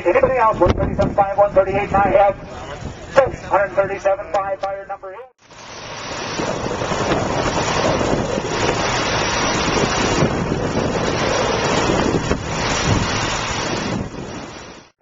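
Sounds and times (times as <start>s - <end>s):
wind buffeting microphone: 0.0s - 4.3s, 5.8s - 15.0s.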